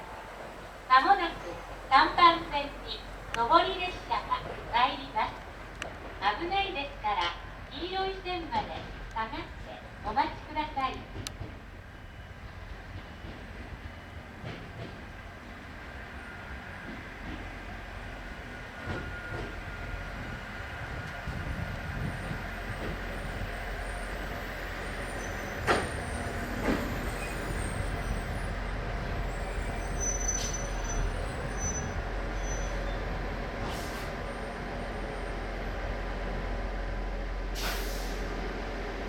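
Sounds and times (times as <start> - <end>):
train rumbling: 0.0 - 39.0
high brake squeals: 22.1 - 28.6, 29.2 - 33.1.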